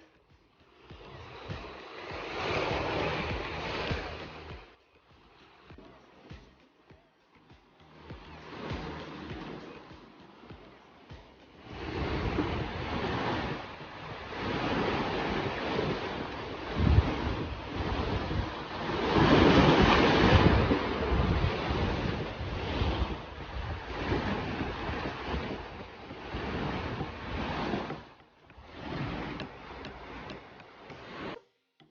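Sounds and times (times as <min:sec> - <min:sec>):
ocean waves breaking: 0:00.0 - 0:31.4
wind buffeting microphone: 0:10.6 - 0:31.4.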